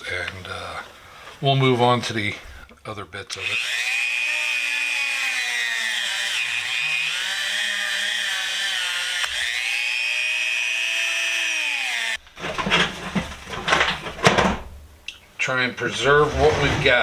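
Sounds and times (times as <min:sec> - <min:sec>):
small power tool whining: 0:03.3 - 0:14.3
knocks and clatter of handling: 0:12.3 - 0:15.0.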